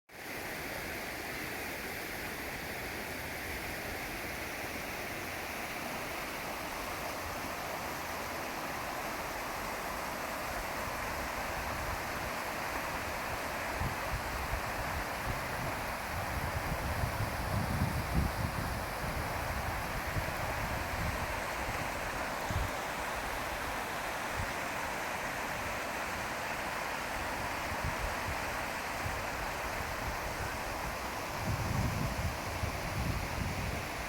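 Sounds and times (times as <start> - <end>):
river water rushing: 0.1 - 34.0
wind buffeting microphone: 13.7 - 22.8, 27.4 - 34.0.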